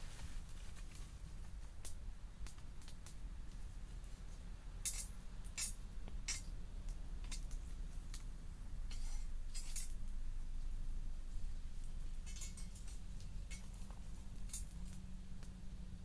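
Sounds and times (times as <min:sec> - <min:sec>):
campfire crackling: 0:00.0 - 0:08.4, 0:09.0 - 0:16.0.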